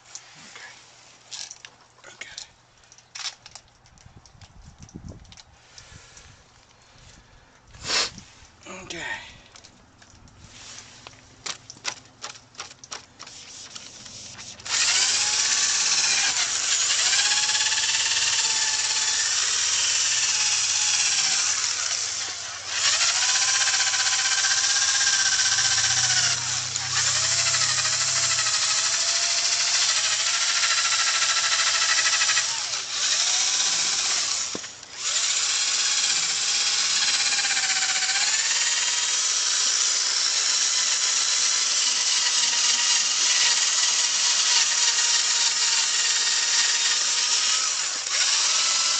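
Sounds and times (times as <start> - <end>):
power drill whining: 12.2 - 48.9.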